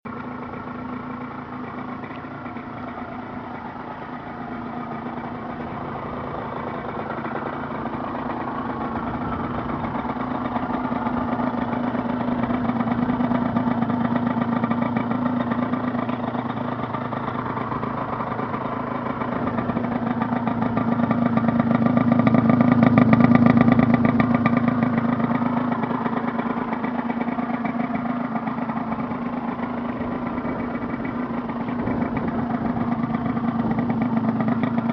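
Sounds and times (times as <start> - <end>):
motorcycle engine idling: 0.1 - 34.9.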